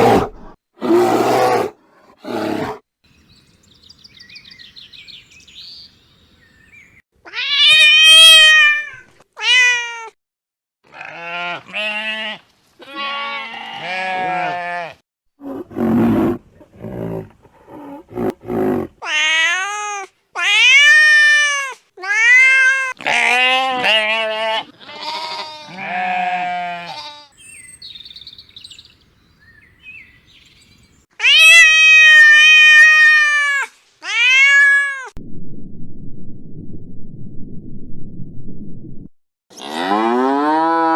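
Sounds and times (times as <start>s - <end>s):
goat bleating: 10.9s - 15.0s, 22.0s - 27.4s.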